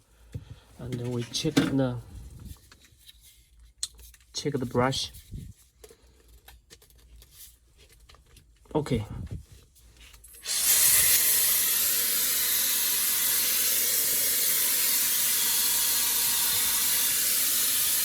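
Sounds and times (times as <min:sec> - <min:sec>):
hair dryer blowing air: 0:10.4 - 0:18.0
hair dryer switching on: 0:10.4 - 0:18.0.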